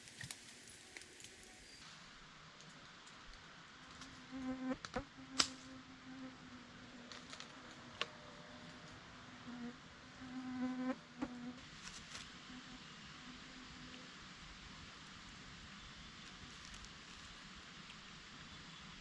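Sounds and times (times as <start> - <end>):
flying insect buzzing: 3.9 - 6.6, 9.4 - 11.6.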